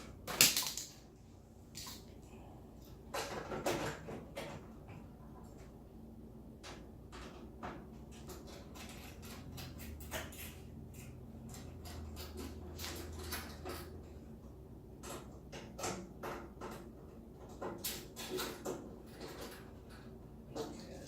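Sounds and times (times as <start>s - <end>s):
metal hardware clicks and knocks: 6.6s - 14.2s.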